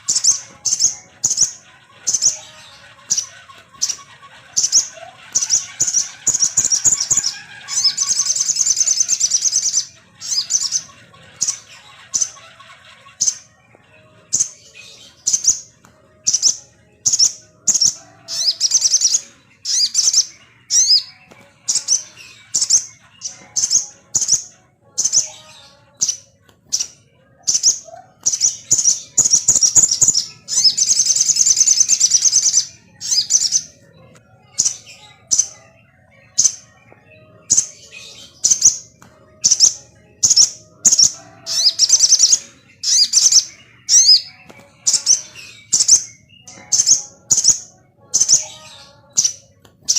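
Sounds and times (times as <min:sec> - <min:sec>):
bird chirping: 0:00.0 - 0:49.9.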